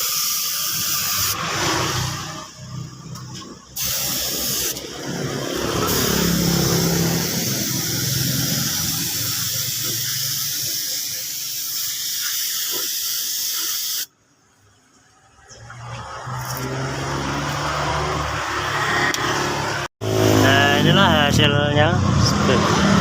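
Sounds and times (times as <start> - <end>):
paint spraying hiss: 0.0 - 1.4, 3.8 - 4.8, 5.8 - 14.1.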